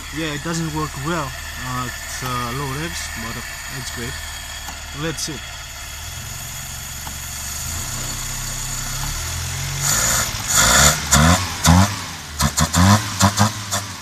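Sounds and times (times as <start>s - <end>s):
car engine idling and revving: 0.0s - 14.0s.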